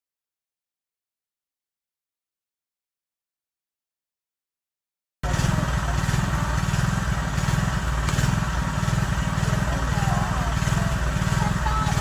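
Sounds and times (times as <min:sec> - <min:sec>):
engine running with low pulsing: 0:05.2 - 0:12.0.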